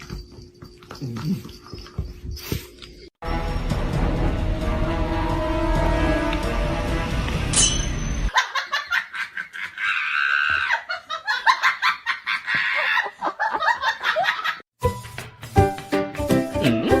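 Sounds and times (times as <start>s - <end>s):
music: 3.2s - 7.6s, 14.8s - 17.0s
person laughing hard: 8.3s - 14.6s.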